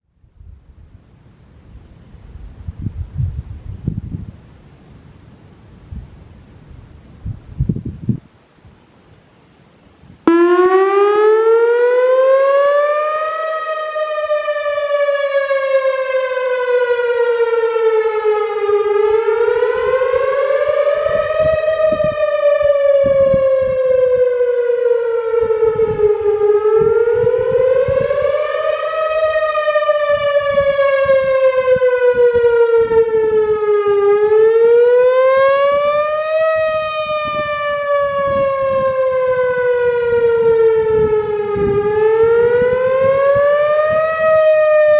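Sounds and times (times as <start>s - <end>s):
warning siren wailing: 10.2s - 44.9s.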